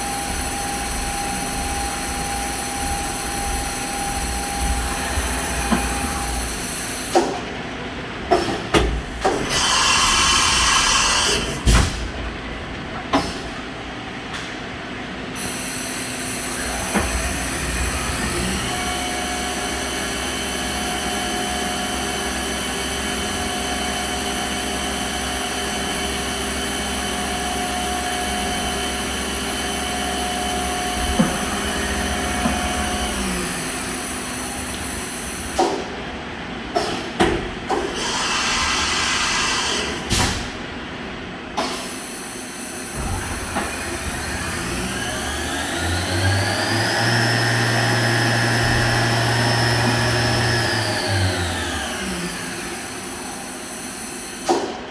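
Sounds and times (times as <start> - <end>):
machine motor whine: 0.0 - 7.4, 15.5 - 35.6, 42.2 - 54.5.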